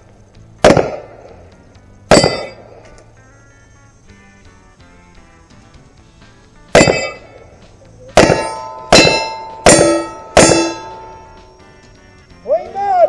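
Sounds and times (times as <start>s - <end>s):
pistol shots: 0.6s - 3.0s, 6.7s - 11.6s
bullet clanging steel target: 0.6s - 3.5s, 6.7s - 12.2s.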